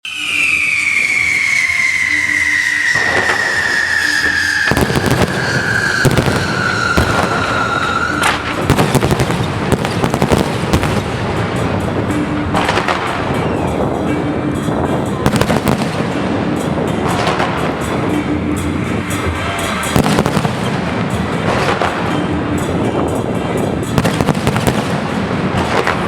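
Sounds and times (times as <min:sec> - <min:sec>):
firework whistle falling in pitch: 0:00.0 - 0:09.5
fireworks crackling and banging: 0:00.1 - 0:26.0.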